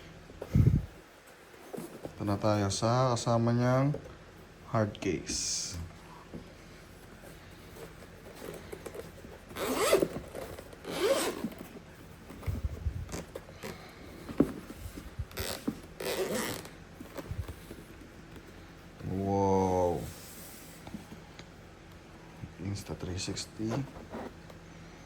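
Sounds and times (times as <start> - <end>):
zipper rasping open: 9.5 - 11.6, 15.3 - 16.7.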